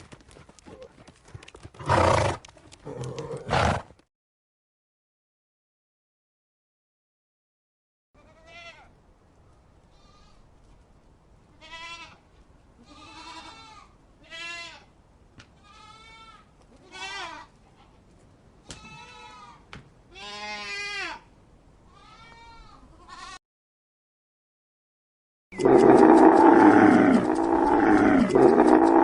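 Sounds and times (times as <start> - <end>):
goats bleating: 25.6 - 29.0.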